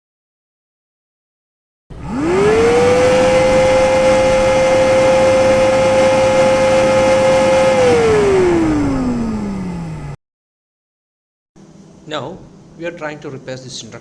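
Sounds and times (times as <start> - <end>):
motor whine: 1.9 - 10.2.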